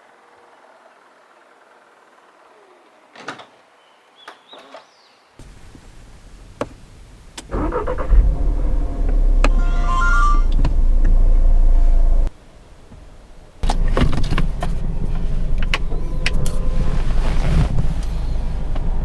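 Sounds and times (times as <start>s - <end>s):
car engine and road noise: 5.4s - 19.0s.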